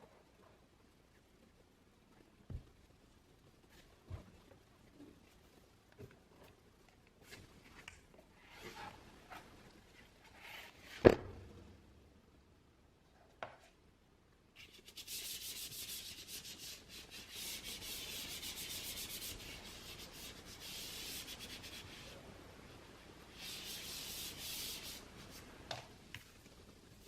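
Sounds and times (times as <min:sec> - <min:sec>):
scratchy rubbing on packaging: 0:14.6 - 0:22.2, 0:23.4 - 0:25.4.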